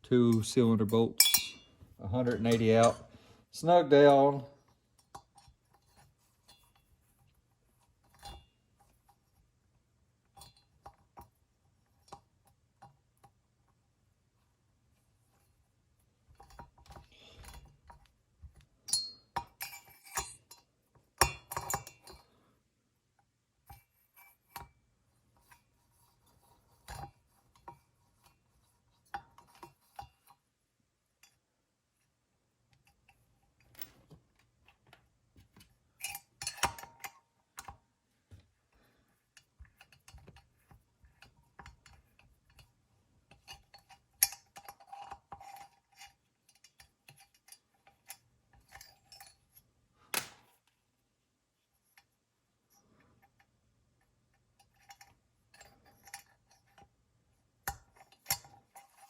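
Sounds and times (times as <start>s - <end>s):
metal tools and parts clinking: 0.3s - 4.4s, 18.9s - 22.2s.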